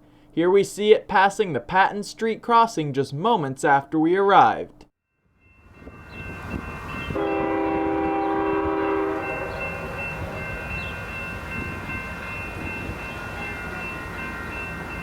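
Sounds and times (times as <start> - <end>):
high ringing tones: 5.1 - 15.0
passing train rumble: 5.4 - 15.0
train horn blast: 7.0 - 10.4.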